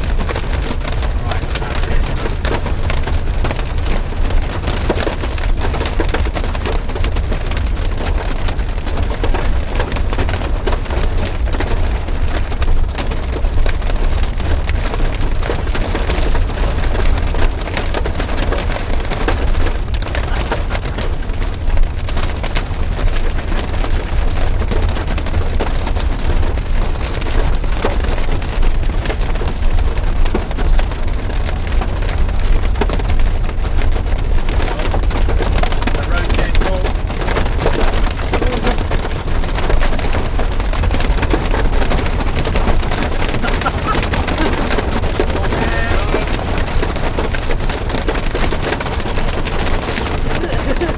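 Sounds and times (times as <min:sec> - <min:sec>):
heavy rain pelting down: 0:00.0 - 0:50.9
steady low rumble: 0:00.0 - 0:50.9.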